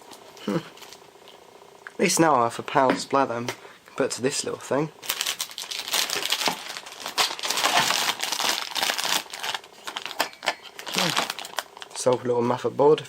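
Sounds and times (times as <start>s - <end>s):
crinkling and rustling: 5.0s - 12.3s.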